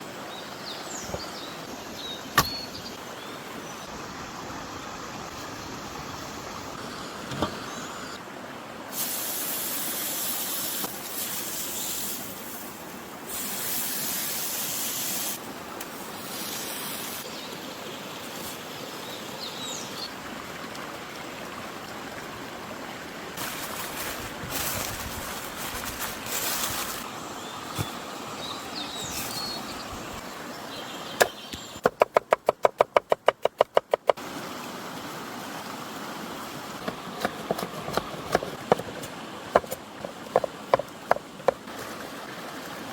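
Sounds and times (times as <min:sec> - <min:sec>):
river water rushing: 0:34.1 - 0:42.9.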